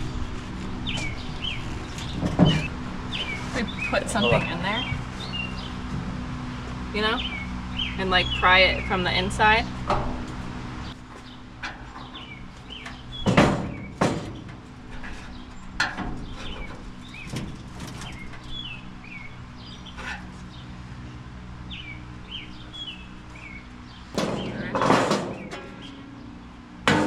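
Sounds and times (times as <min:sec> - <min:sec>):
steady low hum: 0:00.0 - 0:27.0
knocks on metal car body: 0:13.2 - 0:14.6.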